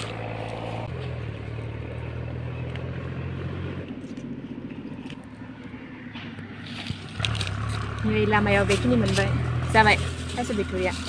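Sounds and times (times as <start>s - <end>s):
vehicle engine humming: 0.0s - 11.0s.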